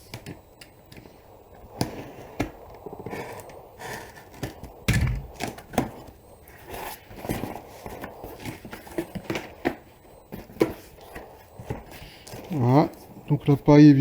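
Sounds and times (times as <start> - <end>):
cardboard parcel being opened: 1.8 - 13.3
heavy thump: 4.9 - 5.5.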